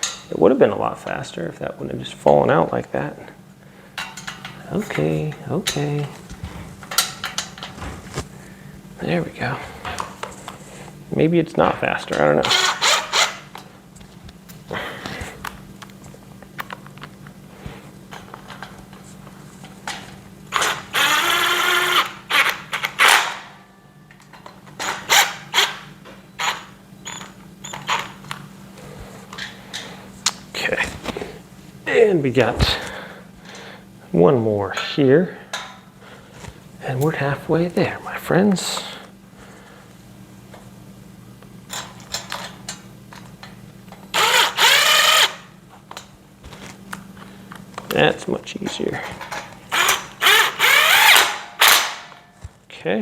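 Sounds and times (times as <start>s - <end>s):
impact driver driving a screw: 12.5s - 13.4s, 44.2s - 45.4s, 49.7s - 52.0s.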